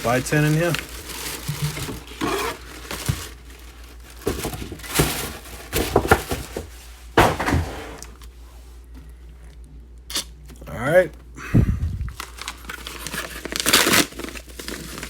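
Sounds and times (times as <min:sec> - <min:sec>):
plastic packaging crinkling: 0:00.0 - 0:08.1, 0:12.1 - 0:15.0.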